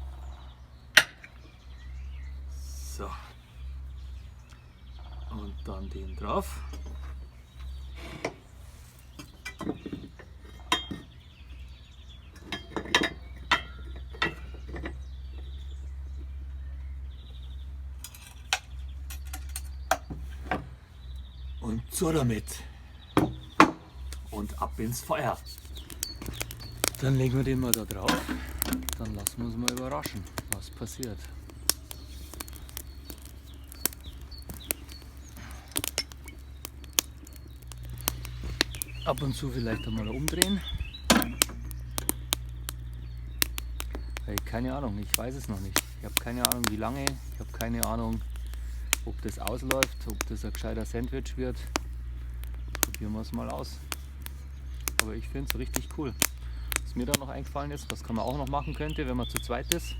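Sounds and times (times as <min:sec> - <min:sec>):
campfire crackling and popping: 0:18.4 - 0:59.9.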